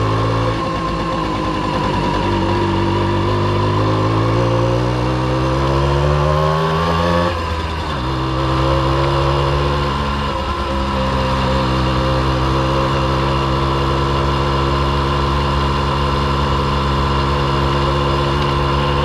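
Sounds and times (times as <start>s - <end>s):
moped engine revving: 0.0s - 19.0s.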